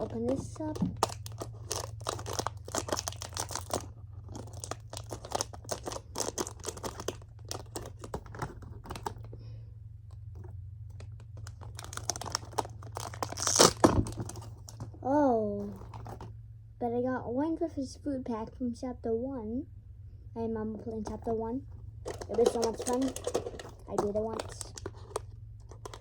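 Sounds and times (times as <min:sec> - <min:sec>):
packaging crinkling: 0:00.0 - 0:09.4, 0:10.3 - 0:14.9, 0:15.7 - 0:16.3, 0:22.0 - 0:26.0
low steady hum: 0:00.0 - 0:26.0.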